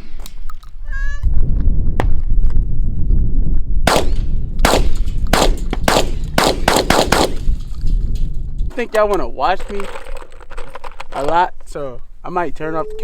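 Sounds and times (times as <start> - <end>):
wind on microphone: 0.0 - 9.5
rapid gunfire: 3.9 - 7.4.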